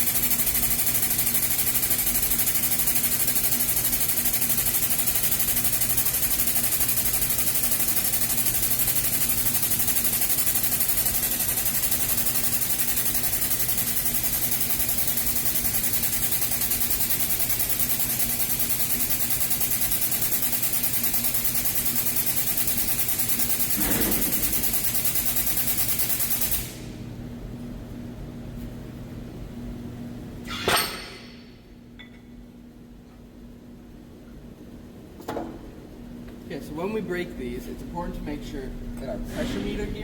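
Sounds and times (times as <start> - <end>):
hydraulic pump humming: 23.7 - 25.0.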